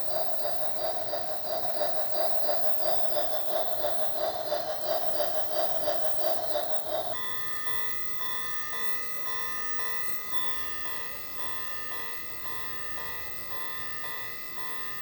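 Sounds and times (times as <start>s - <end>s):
electronic locomotive chuff effect: 0.0s - 7.5s
electronic beeping tune: 3.0s - 15.0s.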